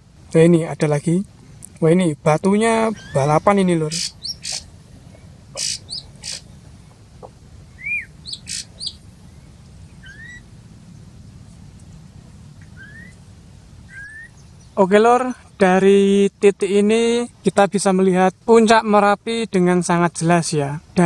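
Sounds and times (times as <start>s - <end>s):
faint low background hiss: 0.0s - 21.0s
small birds chirping: 2.4s - 16.0s
bird whistles: 2.9s - 4.7s, 5.6s - 6.4s, 7.8s - 9.0s, 10.0s - 10.5s, 12.7s - 13.2s, 13.9s - 14.8s.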